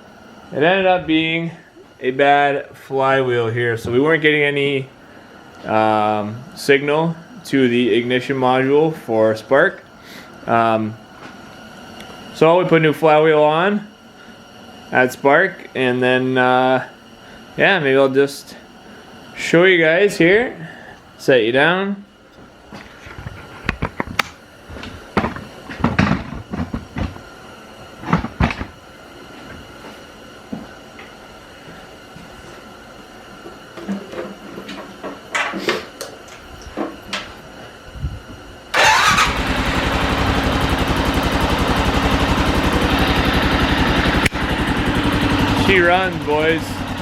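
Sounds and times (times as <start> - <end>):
engine starting and idling: 38.7 - 47.0.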